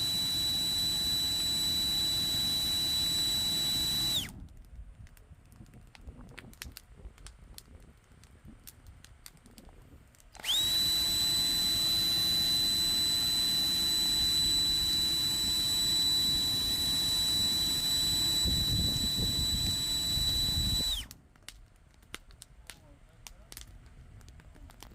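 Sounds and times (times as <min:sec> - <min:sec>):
electric blower whining: 0:00.0 - 0:04.4, 0:10.4 - 0:21.1
fire crackling: 0:00.0 - 0:24.9.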